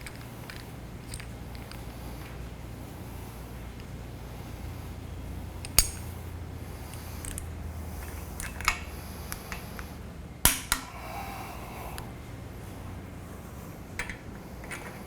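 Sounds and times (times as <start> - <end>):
wrench clinking on bolts: 0.0 - 2.4, 5.6 - 6.2, 6.8 - 8.9.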